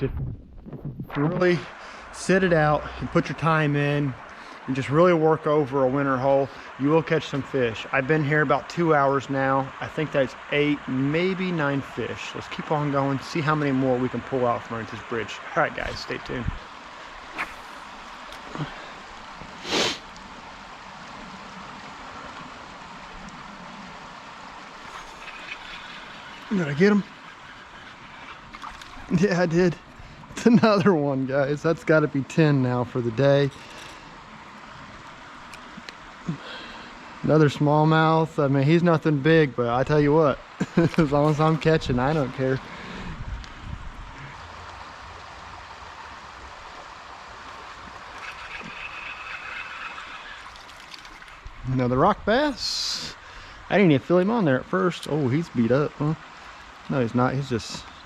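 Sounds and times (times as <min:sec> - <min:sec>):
creek water rushing: 0:01.1 - 0:58.0
loud swish: 0:17.3 - 0:17.8.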